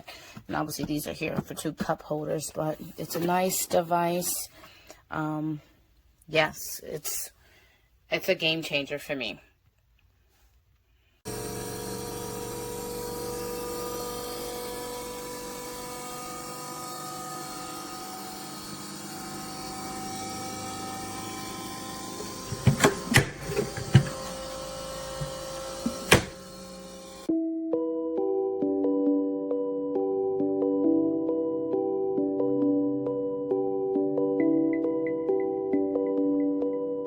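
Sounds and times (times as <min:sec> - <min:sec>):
compressor fridge humming: 0:11.3 - 0:27.3
knocks and clicks: 0:22.0 - 0:26.6.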